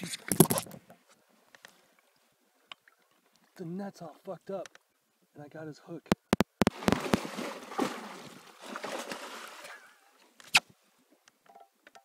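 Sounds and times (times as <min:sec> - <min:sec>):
fish splashing in water: 0:06.6 - 0:09.9.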